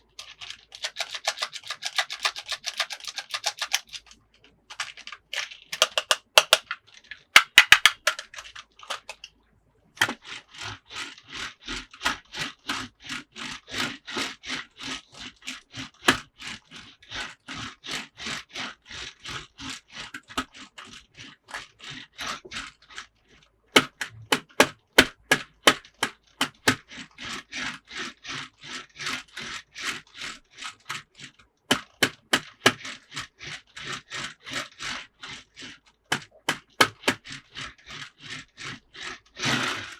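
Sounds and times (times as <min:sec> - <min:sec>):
plastic toy parts clicking: 0:00.0 - 0:09.4, 0:10.0 - 0:12.9, 0:16.0 - 0:16.3, 0:19.9 - 0:23.1, 0:23.7 - 0:27.0, 0:29.0 - 0:39.9.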